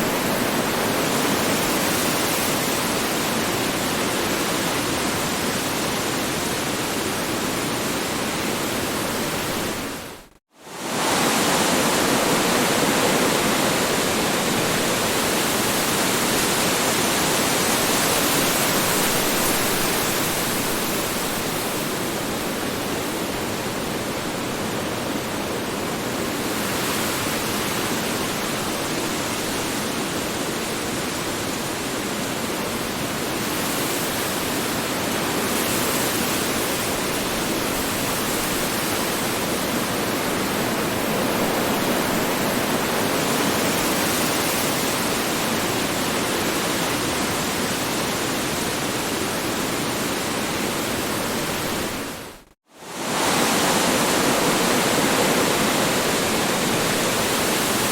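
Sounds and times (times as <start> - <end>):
strong wind blowing: 35.4 - 57.9.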